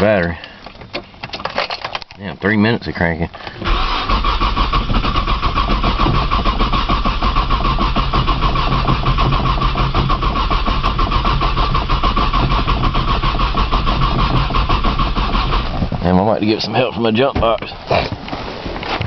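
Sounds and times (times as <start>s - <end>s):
starter motor cranking engine: 3.4s - 17.8s.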